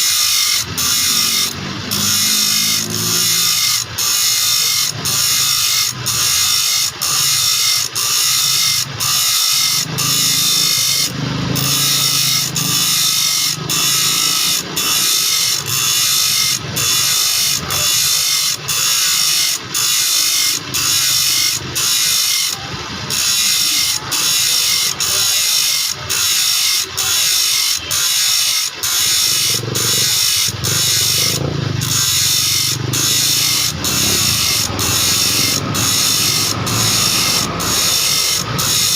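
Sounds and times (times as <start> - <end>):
saw blade filing rasp: 0.0 - 38.9.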